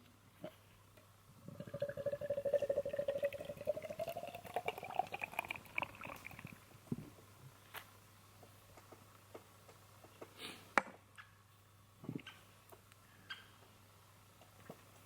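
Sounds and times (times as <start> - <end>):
liquid pouring into container: 1.4 - 6.7.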